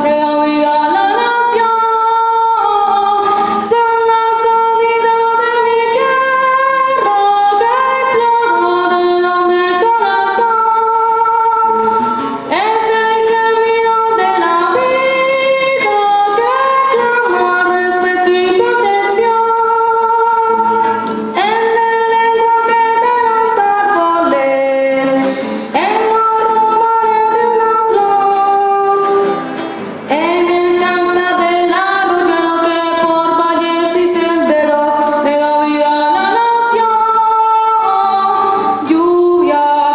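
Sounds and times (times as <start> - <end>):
woman singing: 0.0 - 39.9.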